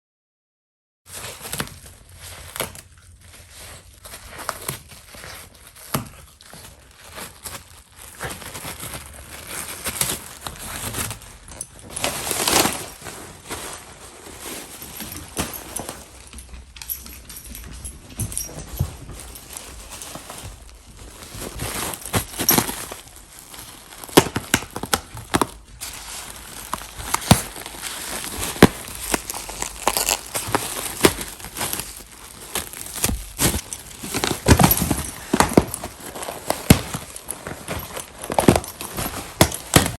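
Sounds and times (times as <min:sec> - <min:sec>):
plastic air cushions crinkling: 0:01.2 - 0:16.4, 0:17.4 - 0:40.0
dog biting plastic: 0:32.8 - 0:40.0.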